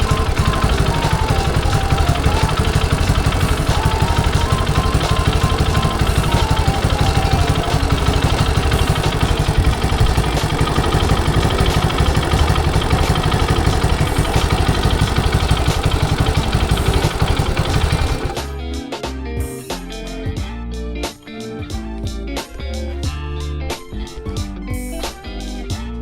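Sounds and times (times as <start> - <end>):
motorcycle engine idling: 0.0 - 18.5.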